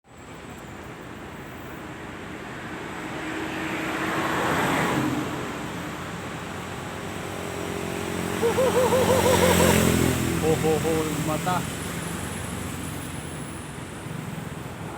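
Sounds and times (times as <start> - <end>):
vehicle passing by: 2.4 - 13.6.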